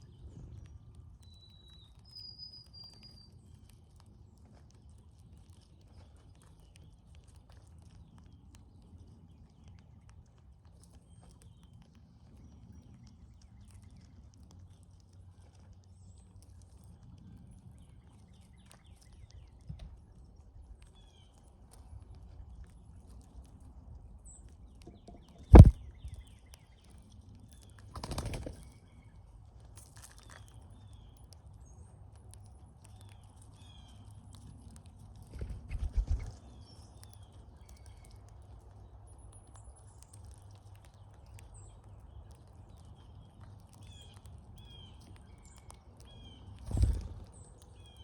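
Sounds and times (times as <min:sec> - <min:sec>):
wings fluttering: 0:24.7 - 0:29.2, 0:34.3 - 0:37.1, 0:45.0 - 0:48.0.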